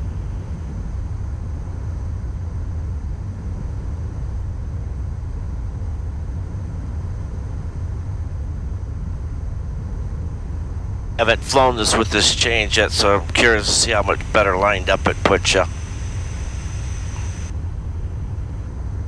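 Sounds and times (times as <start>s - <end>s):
jet cockpit airflow and engine rumble: 11.2s - 18.7s.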